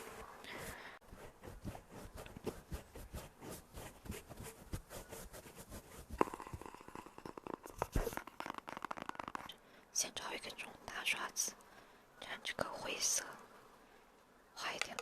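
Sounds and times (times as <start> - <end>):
soft clicks and taps: 14.6 - 15.0.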